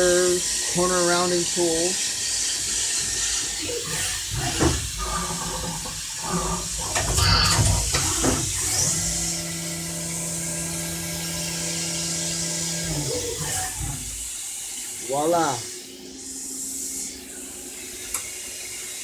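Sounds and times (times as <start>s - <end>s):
coolant spraying hiss: 0.0s - 8.6s, 12.4s - 19.0s
steady motor hum: 0.0s - 19.0s
machine cutting plastic: 2.0s - 14.3s.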